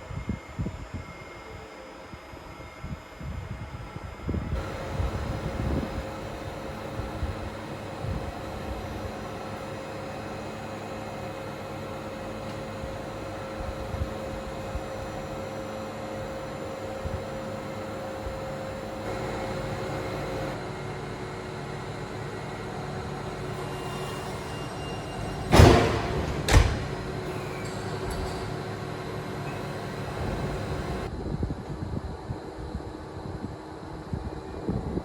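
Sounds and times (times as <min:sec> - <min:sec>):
tram equipment humming: 0:00.0 - 0:35.0
loud clunks: 0:25.0 - 0:28.7.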